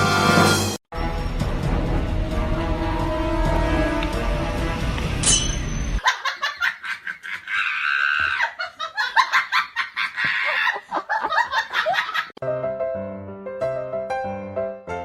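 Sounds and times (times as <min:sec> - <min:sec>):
short music: 0:00.0 - 0:06.0
person laughing hard: 0:06.0 - 0:12.3.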